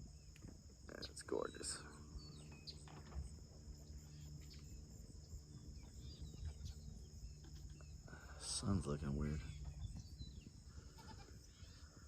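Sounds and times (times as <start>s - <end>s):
faint bird chirps: 0.0s - 12.0s
high-pitched insect trill: 0.0s - 12.0s.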